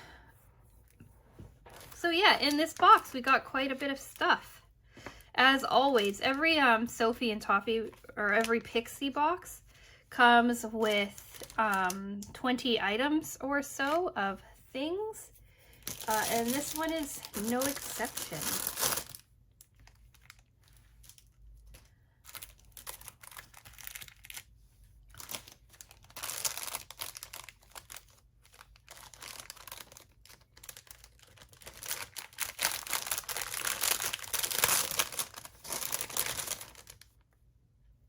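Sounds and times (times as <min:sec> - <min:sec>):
packaging crinkling and rustling: 0:01.5 - 0:03.6, 0:11.0 - 0:12.3, 0:15.7 - 0:37.3.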